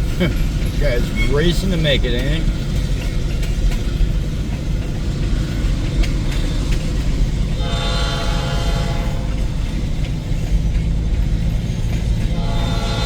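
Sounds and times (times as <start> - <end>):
passing train rumble: 0.0 - 13.0
locomotive horn blast: 7.6 - 9.4, 12.3 - 13.0.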